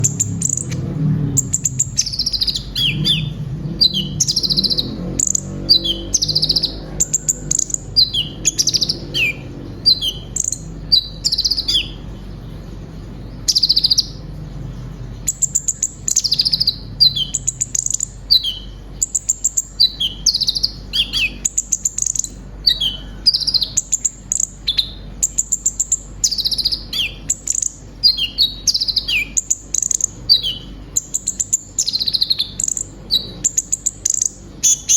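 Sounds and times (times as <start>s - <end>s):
small bird singing high notes: 1.4s - 12.0s, 15.3s - 34.9s.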